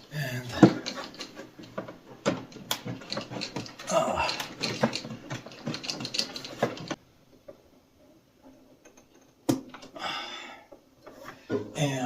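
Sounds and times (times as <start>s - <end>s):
plastic parts clicking and knocking: 0.5s - 7.6s, 8.4s - 10.0s.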